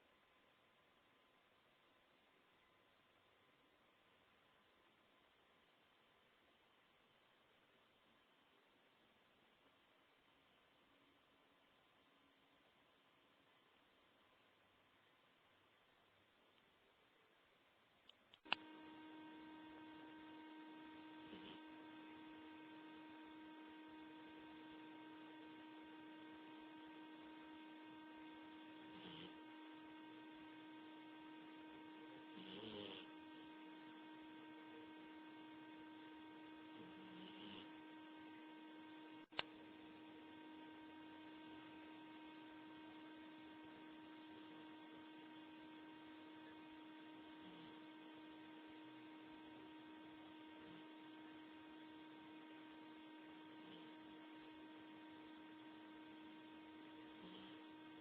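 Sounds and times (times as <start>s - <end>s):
electrical hum with pitched tone: 0.0s - 58.0s
small dog snoring softly: 21.2s - 22.1s, 28.6s - 29.5s, 32.0s - 33.2s, 36.6s - 37.9s, 47.3s - 48.1s, 50.5s - 51.0s, 53.5s - 54.6s, 56.9s - 58.0s.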